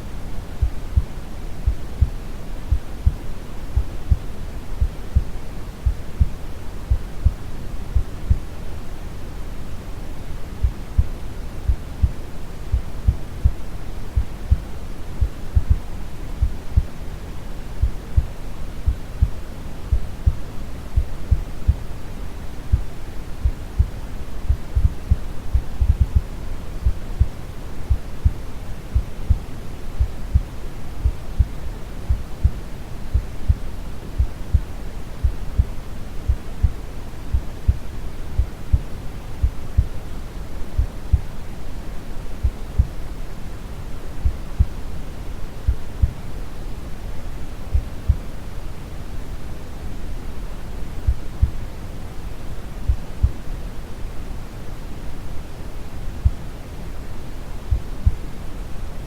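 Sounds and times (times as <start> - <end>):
steady brown noise: 0.0 - 59.0
heartbeat thumps: 0.6 - 7.4, 8.0 - 8.5, 10.6 - 13.6, 14.2 - 17.0, 17.8 - 21.9, 22.7 - 40.0, 40.8 - 41.3, 42.4 - 43.0, 45.7 - 46.2, 47.7 - 48.2, 51.1 - 51.6, 52.9 - 53.4, 57.7 - 58.2.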